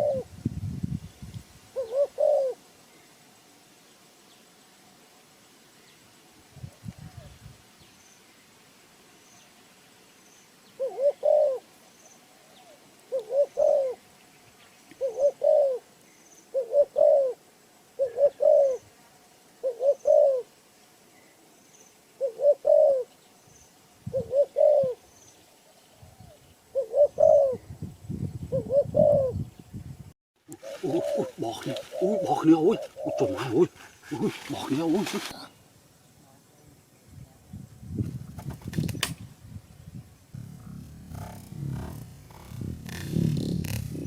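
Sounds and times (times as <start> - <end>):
dove cooing: 0.0 - 0.3, 1.7 - 2.6, 10.8 - 11.7, 12.4 - 14.0, 15.0 - 15.9, 16.5 - 17.4, 18.0 - 18.9, 19.6 - 20.5, 22.2 - 23.1, 24.0 - 25.1, 26.2 - 27.7, 28.5 - 29.4, 30.5 - 35.5, 40.4 - 44.0
low rustling: 30.6 - 35.5, 40.3 - 44.0.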